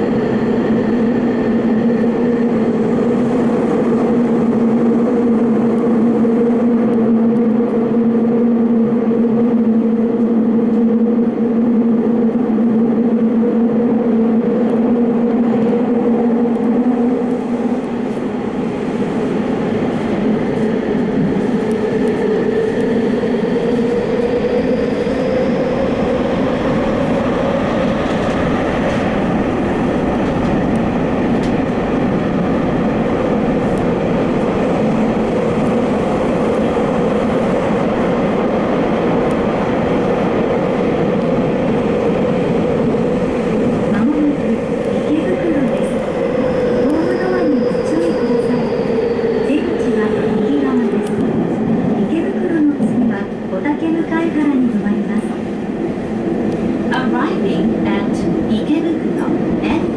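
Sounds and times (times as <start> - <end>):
subway train rolling noise: 0.0 - 59.9.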